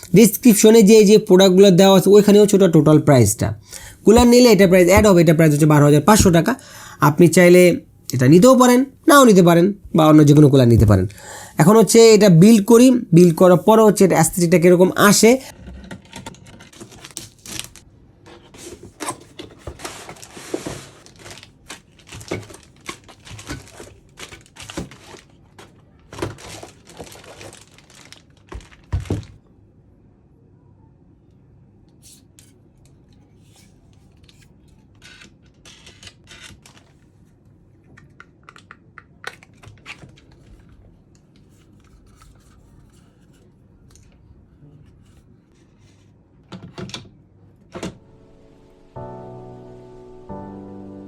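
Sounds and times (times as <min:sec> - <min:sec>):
packaging rustling and crinkling: 0:16.3 - 0:29.4
computer parts knocking and clicking: 0:46.5 - 0:48.0.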